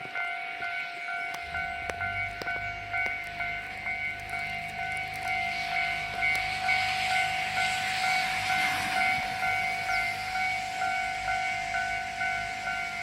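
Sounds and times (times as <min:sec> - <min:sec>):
level crossing warning bell: 0:00.0 - 0:13.0
train rushing past: 0:00.0 - 0:13.0.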